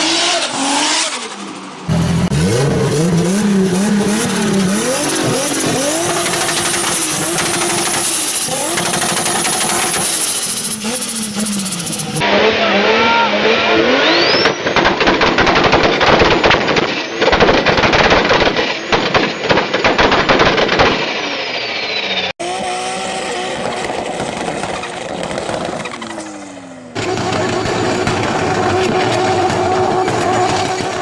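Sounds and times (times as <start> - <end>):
second engine revving: 0.0 - 14.6, 22.4 - 31.0
car engine revving: 0.0 - 14.8, 22.4 - 31.0
turbo whistle: 12.8 - 14.6
anti-lag bangs and crackles: 14.4 - 21.2.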